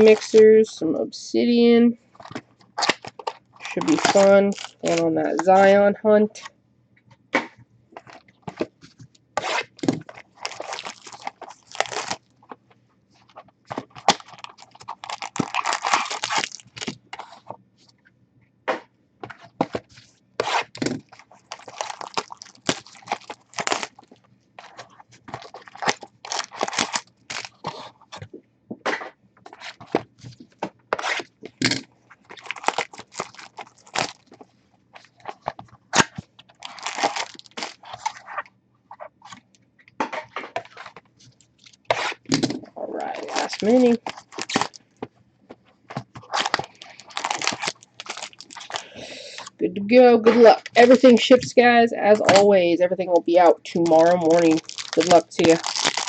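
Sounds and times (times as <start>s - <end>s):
plastic wrapping crinkling and tearing: 0.0s - 0.4s, 2.1s - 5.8s, 9.4s - 12.6s, 13.2s - 17.6s, 20.4s - 28.2s, 29.5s - 34.4s, 35.0s - 38.4s, 40.4s - 44.9s, 46.0s - 49.6s, 53.7s - 56.0s
cardboard scraping and clicking: 27.6s - 31.8s.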